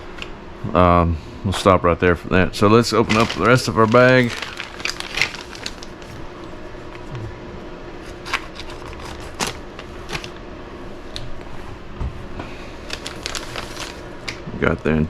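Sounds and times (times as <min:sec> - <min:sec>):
plastic bag rustling: 0:02.6 - 0:07.1, 0:08.1 - 0:10.4, 0:12.7 - 0:14.4.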